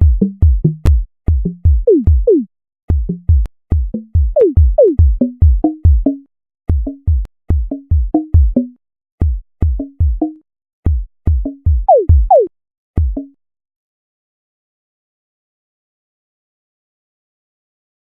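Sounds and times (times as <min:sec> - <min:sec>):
synthesized drum hits: 0:00.0 - 0:03.4, 0:11.3 - 0:12.5.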